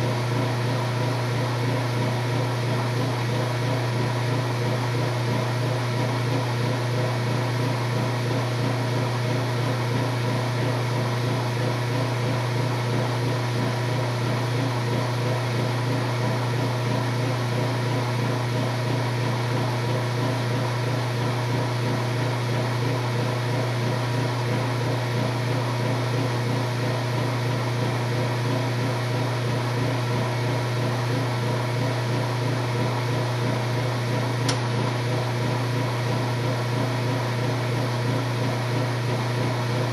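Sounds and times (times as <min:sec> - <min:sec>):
washing machine humming: 0:00.0 - 0:39.9
washing machine click: 0:34.4 - 0:34.8.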